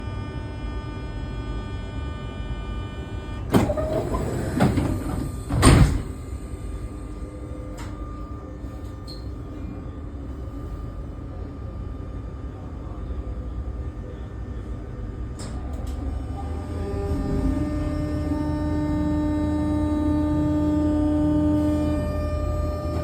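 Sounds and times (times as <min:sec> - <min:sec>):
train door warning buzzer: 0:00.6 - 0:09.5, 0:16.2 - 0:23.0
sliding doors thumping shut: 0:03.5 - 0:06.2.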